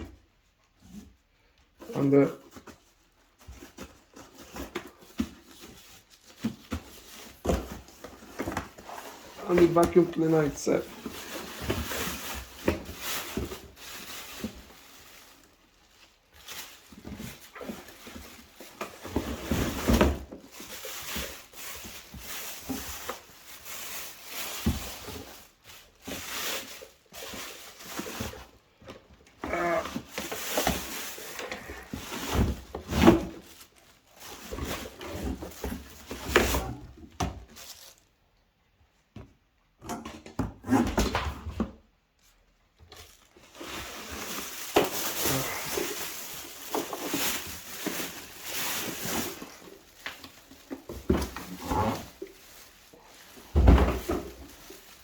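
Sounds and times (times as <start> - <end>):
plastic parts clattering: 42.8 - 55.0.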